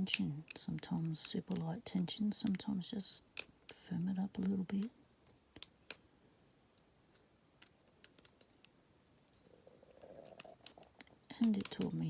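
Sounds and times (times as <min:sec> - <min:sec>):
lock pick clicking in padlock: 0:00.0 - 0:02.6, 0:07.6 - 0:08.7, 0:11.4 - 0:12.0.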